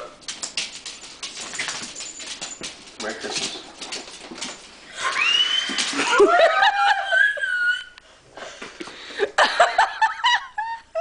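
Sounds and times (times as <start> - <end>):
high-pitched squeals of delight: 4.9 - 6.2
excited laughter: 5.0 - 8.0, 9.2 - 11.0.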